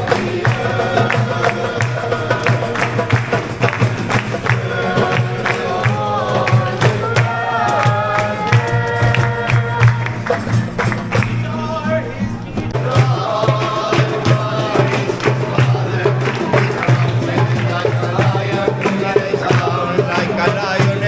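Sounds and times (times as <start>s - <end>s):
percussion beat: 0.0s - 21.0s
person singing: 4.4s - 21.0s.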